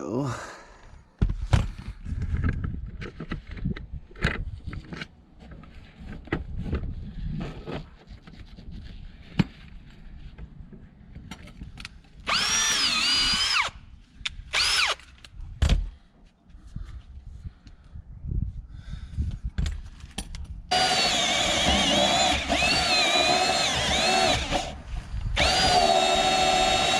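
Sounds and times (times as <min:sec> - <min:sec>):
power drill with hole saw: 0:12.2 - 0:13.8, 0:14.5 - 0:15.1, 0:20.7 - 0:26.9.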